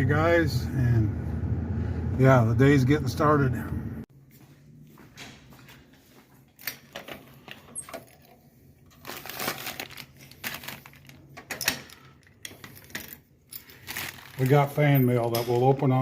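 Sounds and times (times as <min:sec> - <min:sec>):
keys clicking and rattling: 0:10.1 - 0:15.7.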